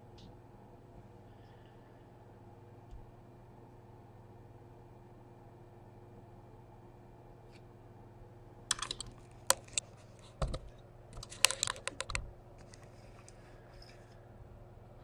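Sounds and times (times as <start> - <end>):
steady low hum: 0.0 - 15.0
sharp clicks and taps: 11.2 - 12.3.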